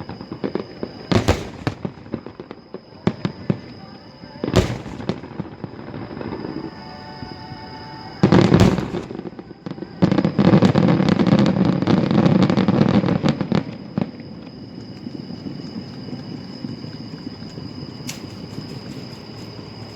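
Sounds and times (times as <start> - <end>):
loud firework burst: 0.0 - 3.7, 4.4 - 13.7
rapid firework crackling: 1.0 - 2.4, 4.6 - 6.4, 8.3 - 9.5.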